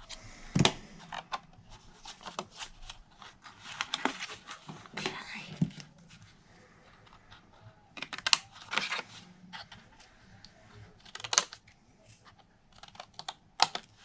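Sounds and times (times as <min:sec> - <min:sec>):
paper rustling: 0:00.0 - 0:10.2.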